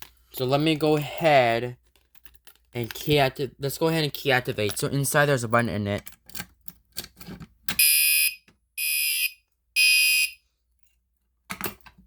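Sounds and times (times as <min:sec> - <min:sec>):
fire alarm horn blasts: 0:07.8 - 0:10.4.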